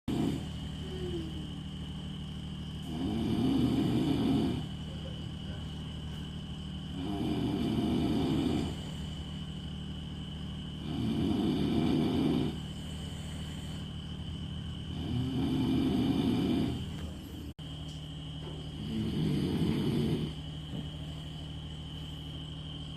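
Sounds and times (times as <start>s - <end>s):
background hum: 0.0s - 22.9s
rasping snores: 0.1s - 1.8s, 2.7s - 4.9s, 6.7s - 17.1s, 18.7s - 20.5s.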